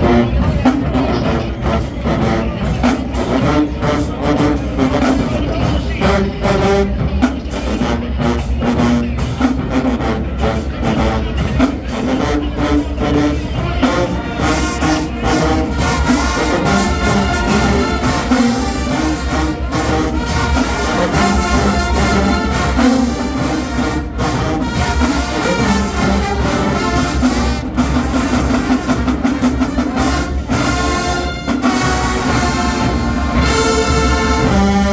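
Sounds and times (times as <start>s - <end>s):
brass playing a tune: 0.0s - 34.9s
drumline beats: 0.0s - 34.9s.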